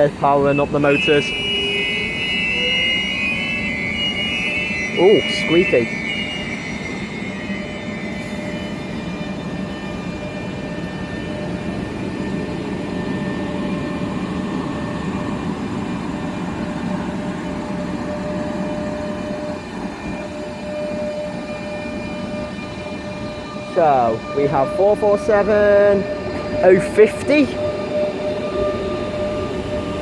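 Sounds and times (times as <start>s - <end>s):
electric motor whine: 0.0s - 30.0s
train wheels rumbling: 0.0s - 30.0s.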